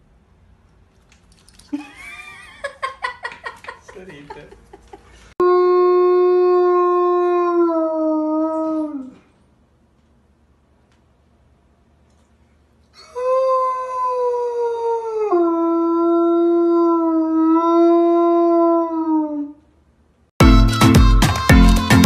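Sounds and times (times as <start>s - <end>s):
dog howling: 5.4s - 9.2s
music: 20.4s - 22.0s.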